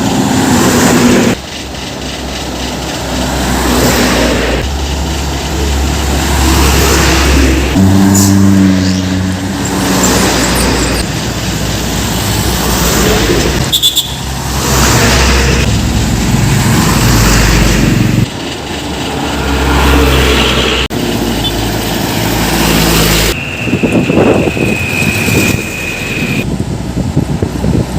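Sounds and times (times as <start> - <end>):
trucks passing: 0.0 - 27.9.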